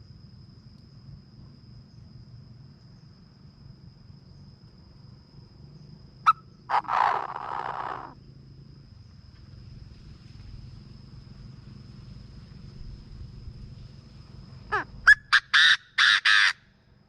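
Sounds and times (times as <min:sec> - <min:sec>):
francolin calling: 0:06.2 - 0:08.2, 0:14.7 - 0:16.6.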